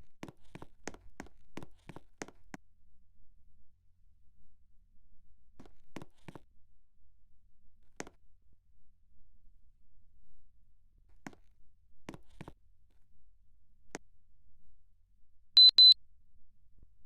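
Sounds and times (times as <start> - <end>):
high-pitched electronic beeps: 15.6 - 16.0.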